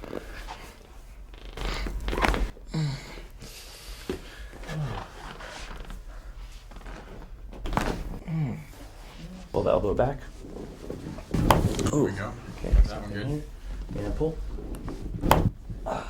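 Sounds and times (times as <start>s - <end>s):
breathy exhales: 1.6s - 6.5s, 15.7s - 16.0s
man groaning: 8.2s - 8.7s.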